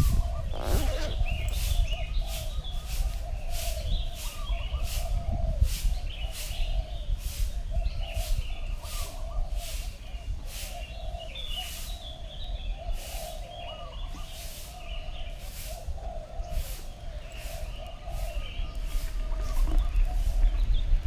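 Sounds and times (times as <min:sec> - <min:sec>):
warbling bird call: 0:00.0 - 0:05.2.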